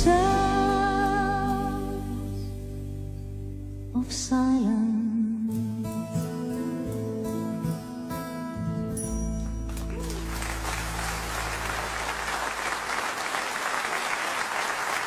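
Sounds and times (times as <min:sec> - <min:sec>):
audience applauding: 0:09.7 - 0:15.0.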